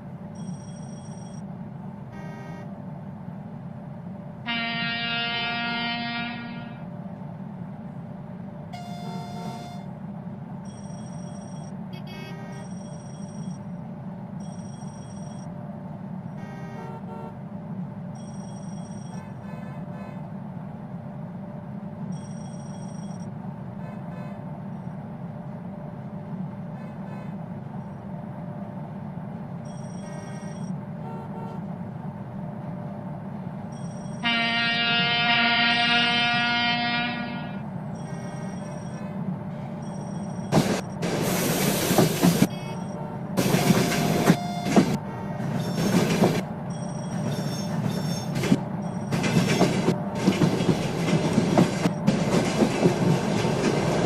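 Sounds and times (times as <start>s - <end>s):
train horn blowing: 2.2s - 2.7s, 4.4s - 6.9s, 16.4s - 17.4s, 31.0s - 31.7s, 34.2s - 37.7s
train rumbling past: 23.2s - 54.0s.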